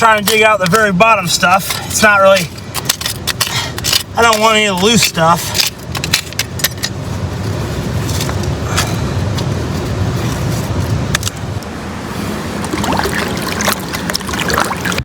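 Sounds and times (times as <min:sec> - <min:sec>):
hand tool scraping gravel: 0:00.0 - 0:06.8.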